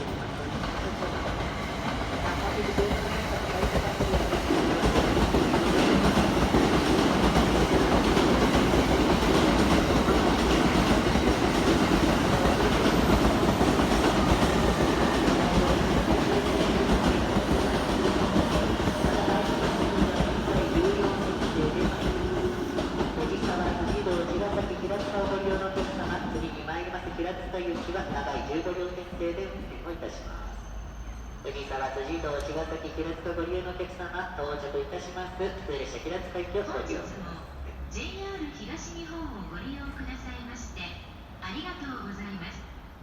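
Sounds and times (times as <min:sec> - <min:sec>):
train wheels clattering: 0:00.0 - 0:28.4.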